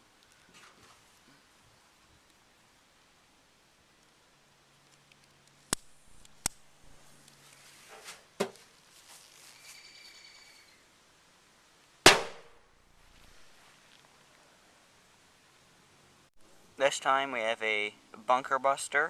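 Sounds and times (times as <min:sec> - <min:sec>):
sharp clicks: 0:04.8 - 0:06.6
firecracker bang: 0:12.1 - 0:12.6.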